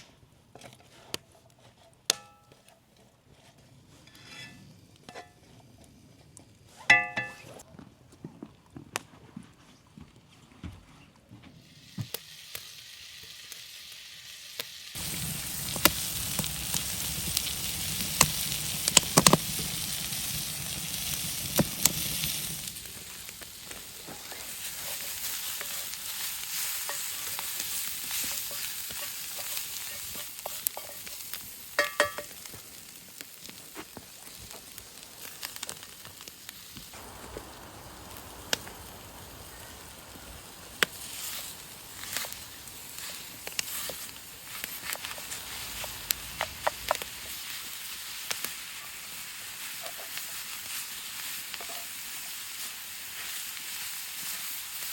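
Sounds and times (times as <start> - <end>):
food sizzling in a skillet: 11.6 - 54.9.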